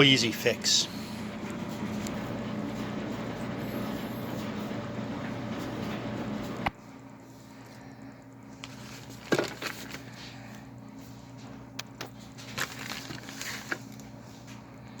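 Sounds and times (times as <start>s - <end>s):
motor fan humming: 0.0s - 15.0s.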